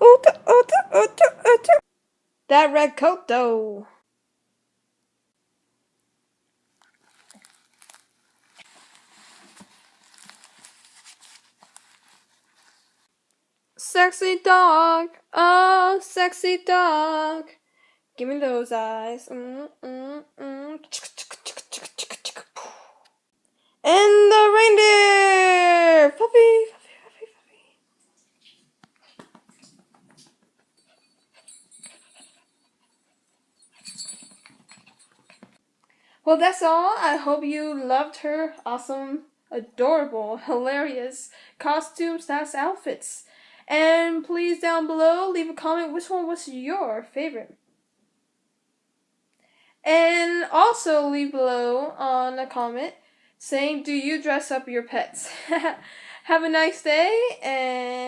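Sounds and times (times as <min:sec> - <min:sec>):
small dog whimpering: 0:00.0 - 0:01.8
faint rustling: 0:06.7 - 0:13.2.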